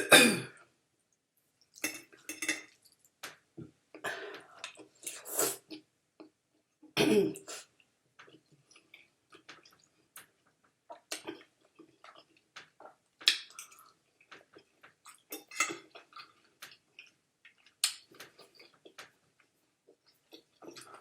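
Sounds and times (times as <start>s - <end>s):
chewing and wet mouth smacking: 8.2s - 19.2s.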